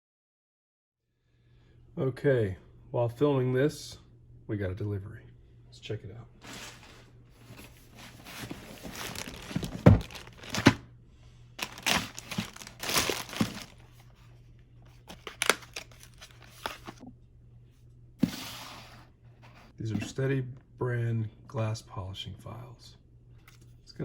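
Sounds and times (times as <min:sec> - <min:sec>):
packaging crinkling and tearing: 0:07.8 - 0:10.8, 0:11.6 - 0:14.1, 0:15.0 - 0:17.0.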